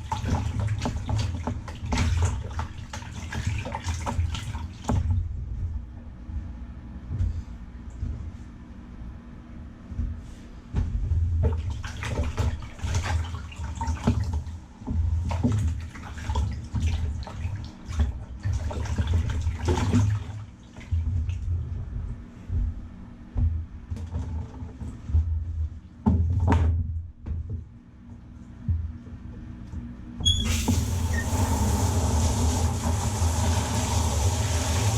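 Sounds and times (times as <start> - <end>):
water sloshing and splashing: 0.0 - 5.8, 10.8 - 22.7, 30.2 - 34.9.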